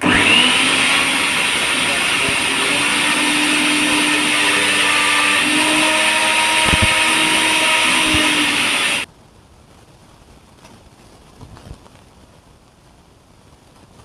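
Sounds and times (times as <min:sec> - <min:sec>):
mixer grinder motor whirring: 0:00.0 - 0:09.1.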